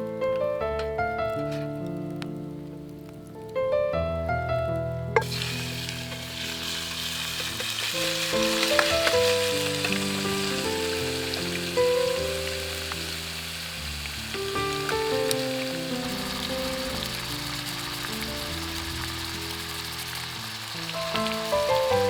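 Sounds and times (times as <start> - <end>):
melodic background music: 0.0 - 20.1
food sizzling in a pan: 5.2 - 22.0.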